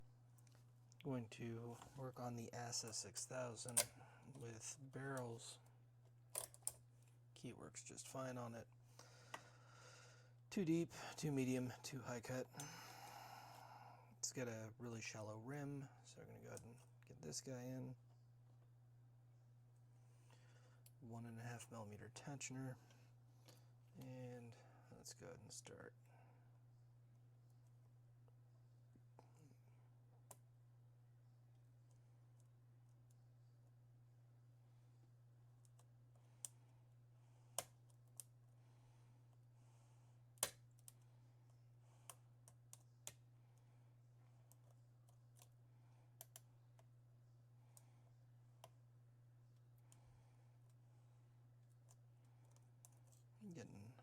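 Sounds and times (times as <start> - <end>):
low electrical hum: 0.0 - 54.0
lock pick clicking: 6.3 - 6.8.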